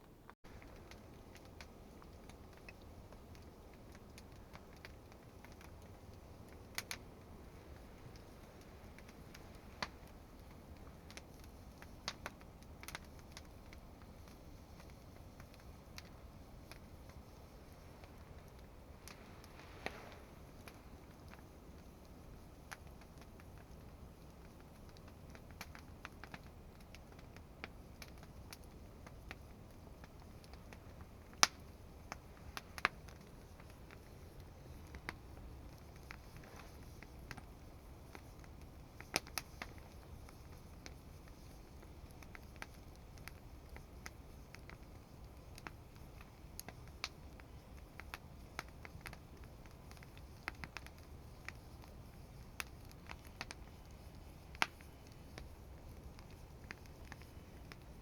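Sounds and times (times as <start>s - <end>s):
faint low rumble: 0.0s - 58.0s
wood fire crackling and popping: 0.0s - 58.0s.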